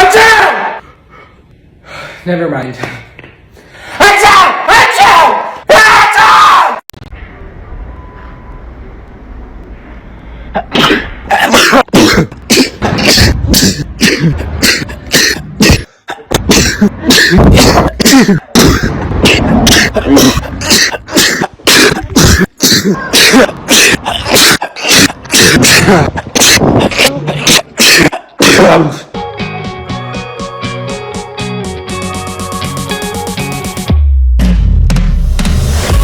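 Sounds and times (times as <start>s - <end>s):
person sneezing loudly: 10.6s - 29.1s.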